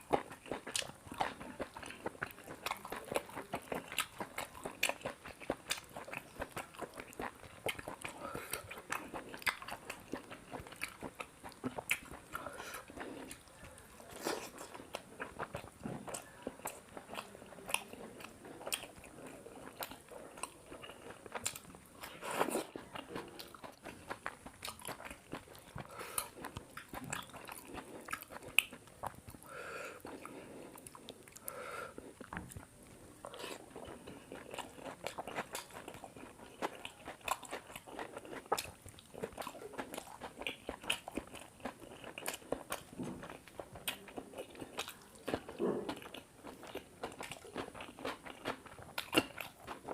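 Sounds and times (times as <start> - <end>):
person chewing food: 0.0 - 49.9.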